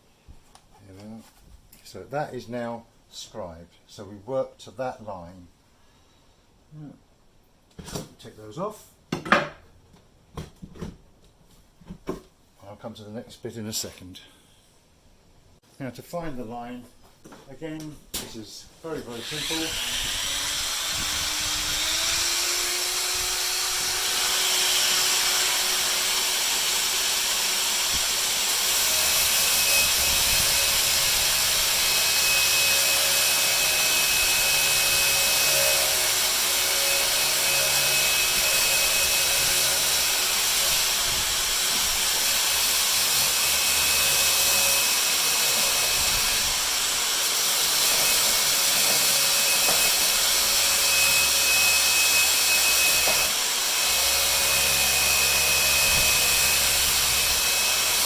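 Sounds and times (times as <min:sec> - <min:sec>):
electric power tool cutting timber: 0:19.1 - 0:58.0.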